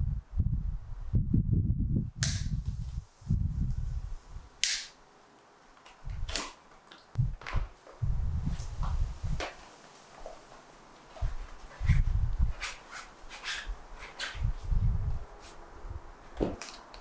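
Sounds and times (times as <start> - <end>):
sharp snaps or clacks: 2.2 - 2.6, 4.6 - 5.0.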